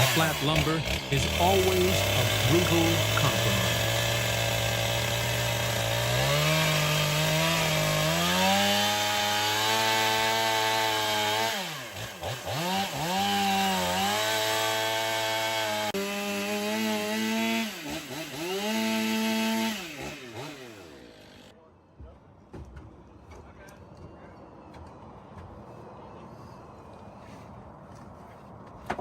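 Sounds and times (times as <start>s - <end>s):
chainsaw cutting log: 0.0s - 21.5s.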